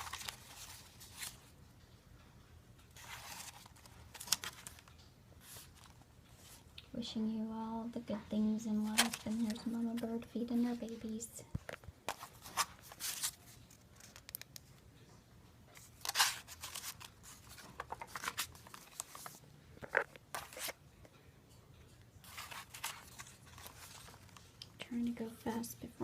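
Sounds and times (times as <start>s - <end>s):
paper pages rustling: 0.0s - 1.5s, 3.0s - 6.6s, 8.8s - 10.8s, 11.5s - 14.7s, 15.8s - 20.8s, 22.2s - 24.7s.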